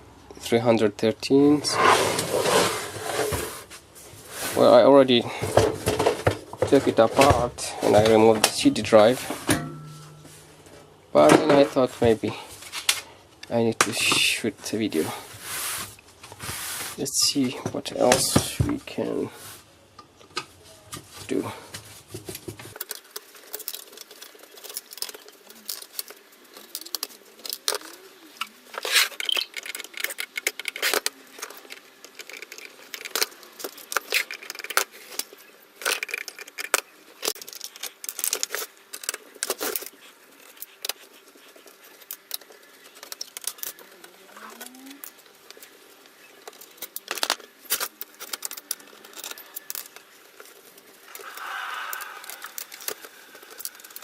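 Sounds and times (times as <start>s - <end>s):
dense scraping: 1.3s - 12.5s.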